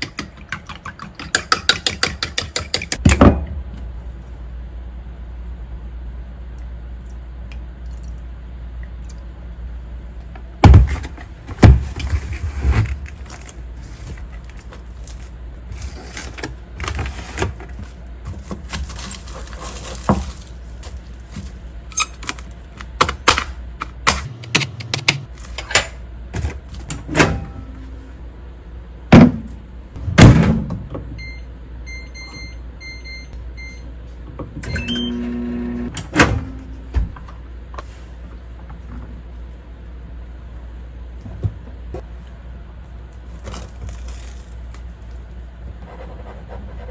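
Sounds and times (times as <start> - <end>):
microwave oven beeps: 31.1 - 34.0, 34.6 - 36.6.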